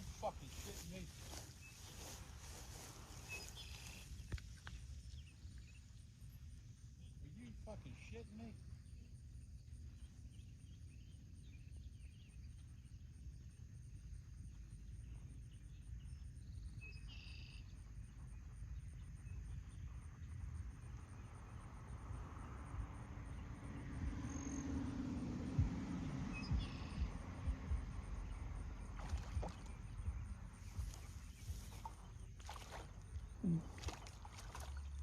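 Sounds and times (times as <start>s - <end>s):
steady low rumble: 0.0s - 16.8s, 17.8s - 35.0s
insects chirping: 0.0s - 35.0s
low hum: 17.6s - 35.0s.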